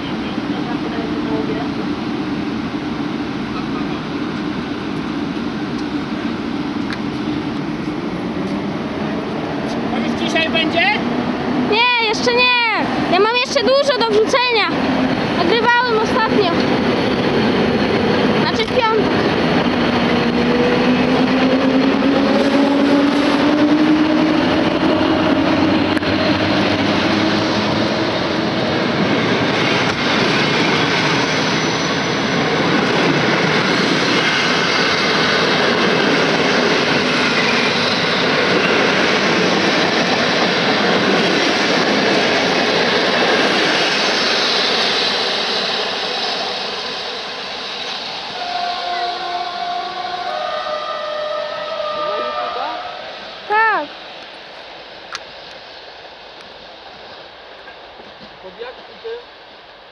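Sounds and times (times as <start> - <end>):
wheels rumbling on rail: 0.0 - 59.9
locomotive whine: 11.0 - 58.4.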